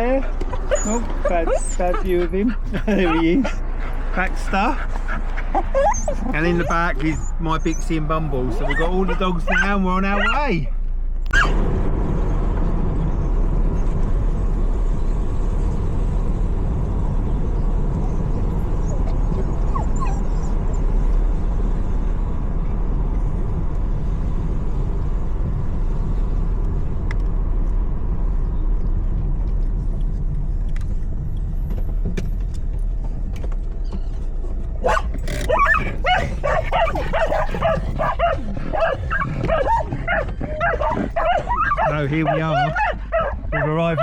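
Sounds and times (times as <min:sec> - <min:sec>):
dogs barking excitedly: 0:00.0 - 0:10.6, 0:11.3 - 0:11.6, 0:17.9 - 0:21.1, 0:33.9 - 0:44.0
vehicle road rumble: 0:00.0 - 0:44.0.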